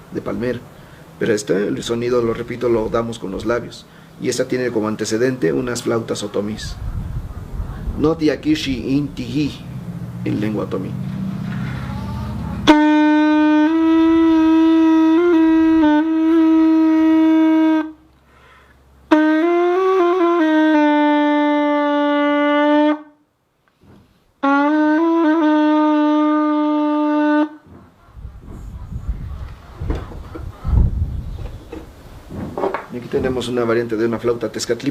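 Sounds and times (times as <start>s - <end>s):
buzzing flute notes: 11.3s - 18.1s, 19.1s - 23.2s, 24.4s - 31.5s.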